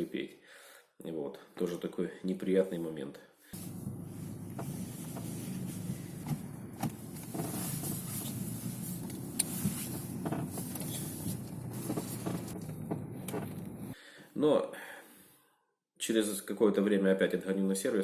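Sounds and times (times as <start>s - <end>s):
road rumble inside car: 3.6s - 14.0s.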